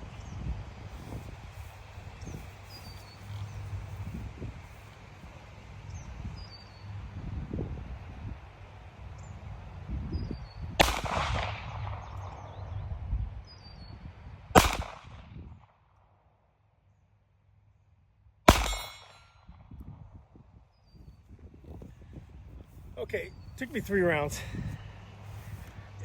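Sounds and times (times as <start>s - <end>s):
pistol shots: 10.8s - 12.2s, 14.6s - 15.2s, 18.5s - 19.3s.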